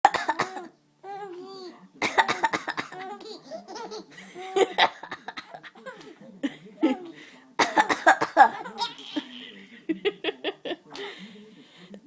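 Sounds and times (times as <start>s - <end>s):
woman coughing: 0.1s - 0.7s, 2.0s - 3.0s, 7.6s - 8.7s
baby laughing: 2.9s - 6.2s, 8.4s - 9.5s.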